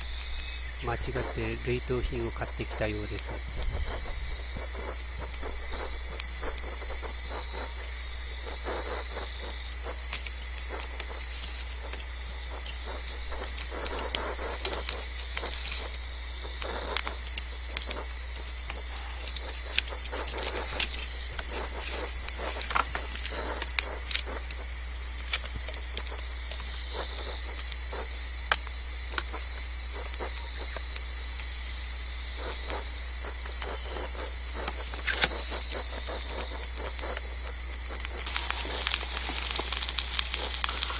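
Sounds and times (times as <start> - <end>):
meat sizzling on a grill: 0.0 - 40.9
fat popping and spitting: 33.6 - 40.9.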